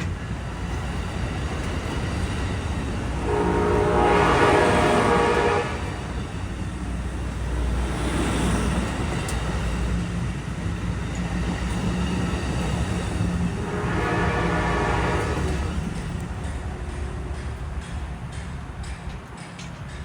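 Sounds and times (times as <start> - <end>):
diesel locomotive engine rumble: 0.0 - 20.0
rail noise: 0.0 - 20.0
locomotive horn: 3.0 - 6.2, 13.5 - 15.8.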